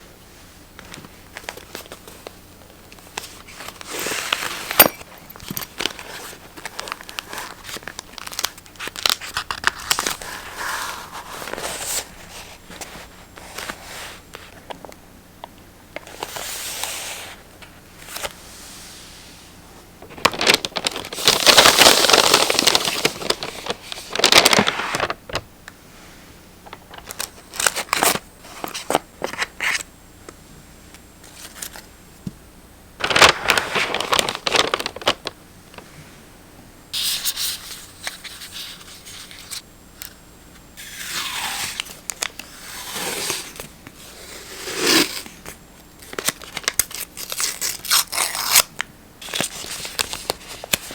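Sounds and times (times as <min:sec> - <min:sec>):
paper rustling and scraping: 0:03.2 - 0:14.7, 0:20.1 - 0:25.4, 0:33.0 - 0:35.9.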